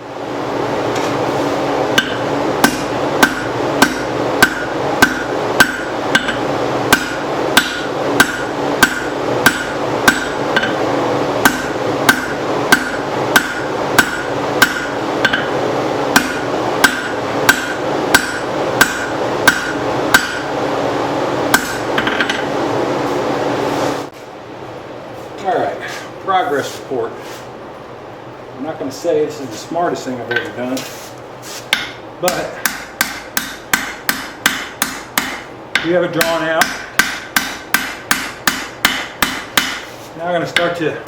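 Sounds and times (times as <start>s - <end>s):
hammer striking steel on anvil: 1.9s - 10.8s, 11.4s - 20.5s, 21.5s - 22.6s, 31.7s - 39.9s.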